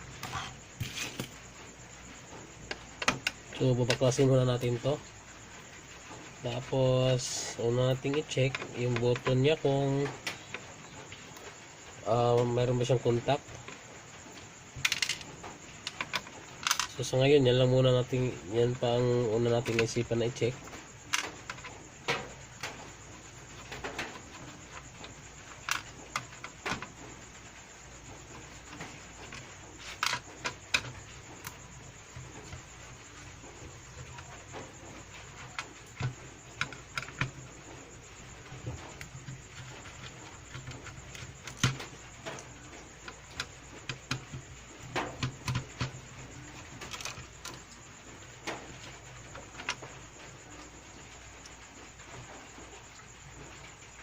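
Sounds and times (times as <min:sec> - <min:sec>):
steady low hum: 0:00.0 - 0:54.0
clicks and knocks on plastic housing: 0:02.6 - 0:04.8, 0:38.6 - 0:47.7.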